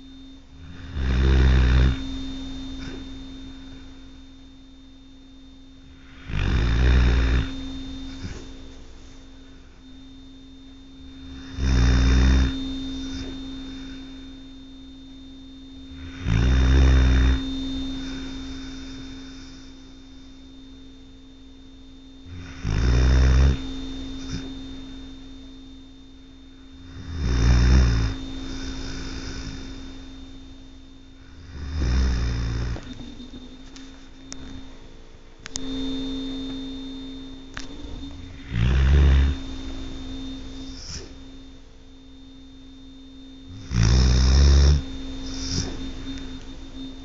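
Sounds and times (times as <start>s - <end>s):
dog snoring: 0.0s - 4.3s, 5.8s - 15.1s, 15.8s - 20.4s, 22.2s - 25.3s, 26.5s - 30.4s, 31.1s - 34.8s, 37.3s - 41.6s, 43.4s - 47.0s
steady background hum: 0.0s - 47.0s.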